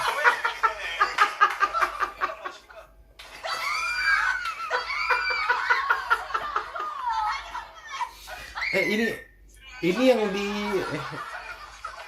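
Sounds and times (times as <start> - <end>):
hearty laughter: 0.0 - 8.6, 10.2 - 12.0
shrieking laughter: 3.3 - 8.9.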